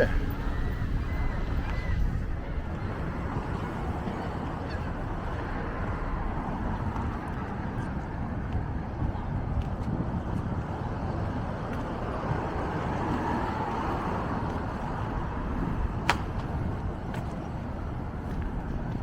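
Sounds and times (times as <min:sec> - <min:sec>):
city street traffic: 0:00.0 - 0:19.0.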